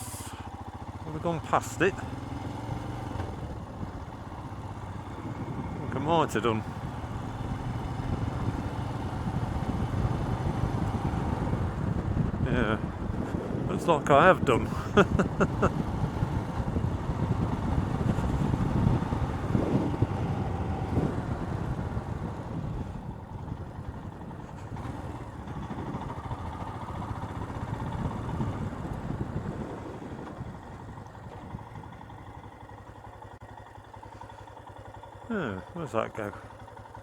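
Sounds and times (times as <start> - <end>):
motorcycle engine running: 0.0 - 37.0
wind rumble: 3.3 - 6.0, 6.6 - 32.6.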